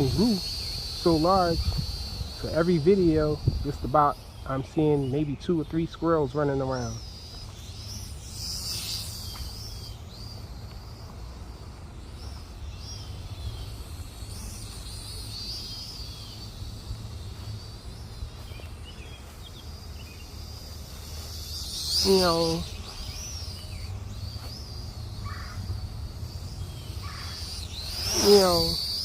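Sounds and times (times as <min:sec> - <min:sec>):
wind on microphone: 0:00.0 - 0:04.2
quadcopter motors whining: 0:00.0 - 0:29.0.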